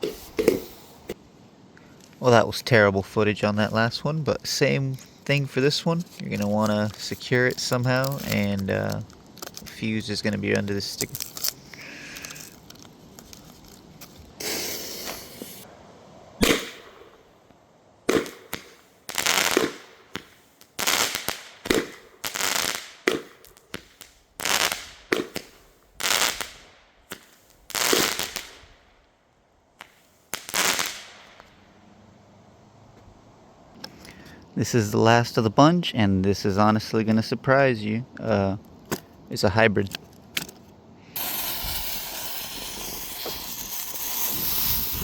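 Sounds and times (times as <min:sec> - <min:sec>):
firework fuse hissing: 0:00.0 - 0:01.2, 0:05.0 - 0:15.7, 0:18.1 - 0:28.8, 0:29.8 - 0:31.5, 0:41.2 - 0:45.0
firework shots whooshing and cracking: 0:00.0 - 0:01.2, 0:05.3 - 0:12.7, 0:14.0 - 0:15.7, 0:16.4 - 0:17.4, 0:18.0 - 0:28.9, 0:29.8 - 0:31.7, 0:41.2 - 0:45.0.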